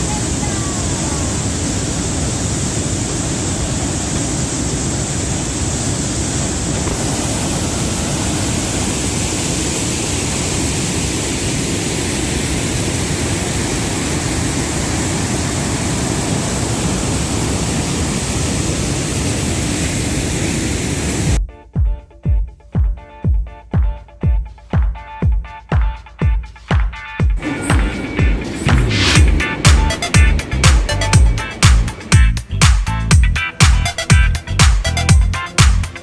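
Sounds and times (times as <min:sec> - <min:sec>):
waterfall rushing: 0:00.0 - 0:21.4, 0:27.4 - 0:33.0.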